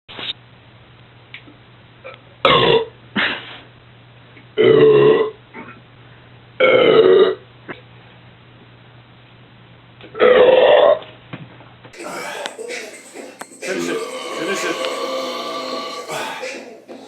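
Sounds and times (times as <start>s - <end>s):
man belching: 12.0s - 16.9s.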